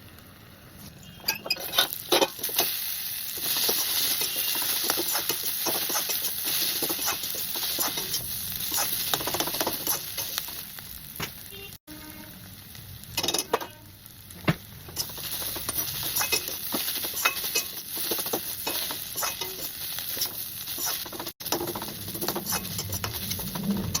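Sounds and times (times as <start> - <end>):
vegetable sizzling in a pan: 0.0 - 24.0
spatula scraping pan: 1.1 - 10.5, 14.9 - 24.0.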